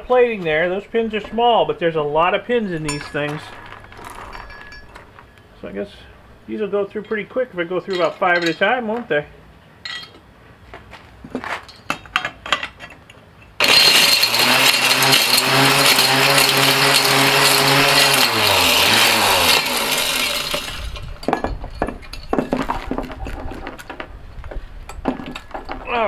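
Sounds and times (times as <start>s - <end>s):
crusher shredding plastic: 0.0s - 6.4s, 13.6s - 26.0s
light clinks of pieces: 2.6s - 5.6s, 9.8s - 10.2s, 11.6s - 24.0s
motor humming: 13.6s - 21.3s.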